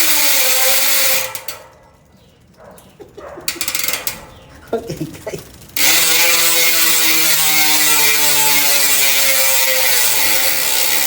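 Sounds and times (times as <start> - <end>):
bicycle hub ratchet buzzing: 0.0 - 1.6, 3.5 - 4.7, 5.4 - 11.0.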